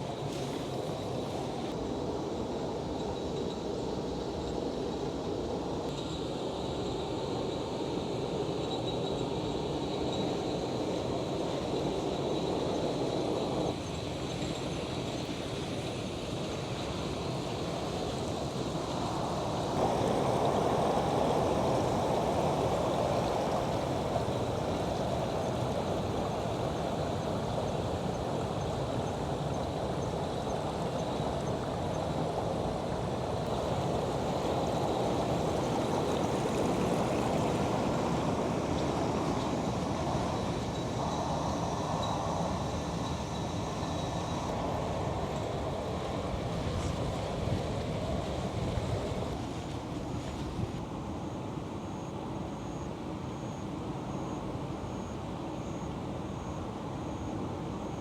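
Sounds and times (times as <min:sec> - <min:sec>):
running water rushing: 0:16.0 - 0:41.7.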